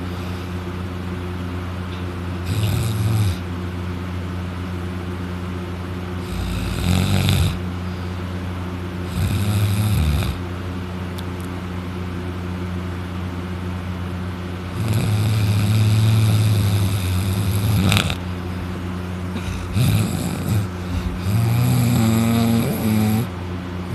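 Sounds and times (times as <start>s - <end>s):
man snoring loudly: 2.4s - 3.5s, 6.2s - 7.6s, 9.0s - 10.4s, 14.7s - 18.3s, 19.4s - 23.9s.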